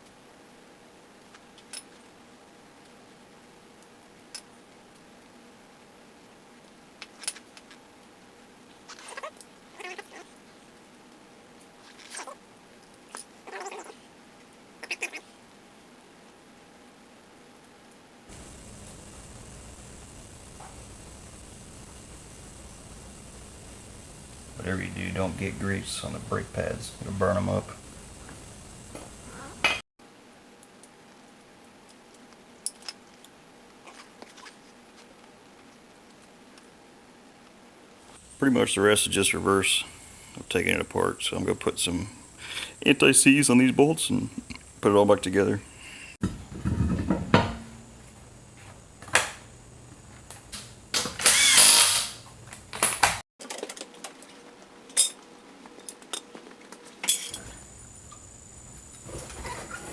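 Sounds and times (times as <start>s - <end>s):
loud tool burst: 50.5s - 53.2s.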